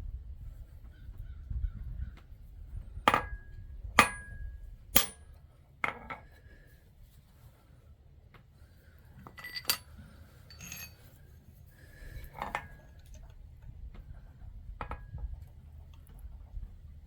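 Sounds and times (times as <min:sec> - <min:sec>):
light metal clinks: 0:09.3 - 0:11.2, 0:12.0 - 0:13.4.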